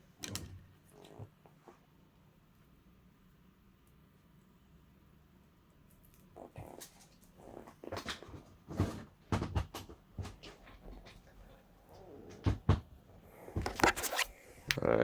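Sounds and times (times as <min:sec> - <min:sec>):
rustling and knocks of handling: 0:07.0 - 0:14.4.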